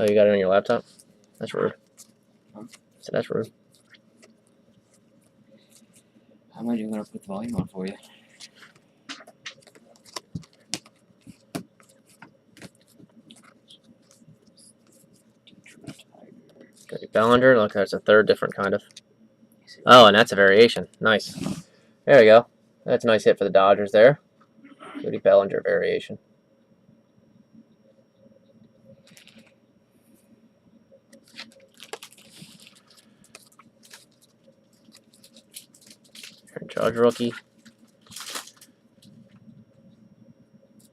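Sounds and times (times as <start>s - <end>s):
trading cards clicking and rustling: 6.9s - 17.0s.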